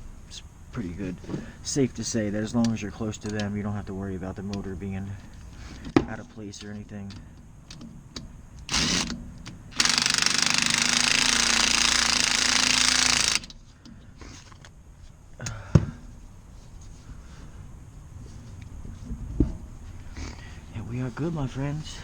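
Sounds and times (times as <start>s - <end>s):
impact driver hammering: 7.7s - 13.6s.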